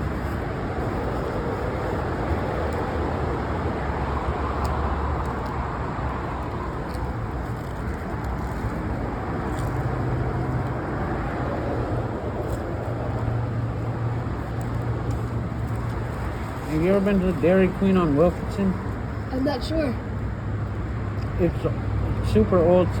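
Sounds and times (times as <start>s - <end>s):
motor vehicles rumbling: 0.0s - 23.0s.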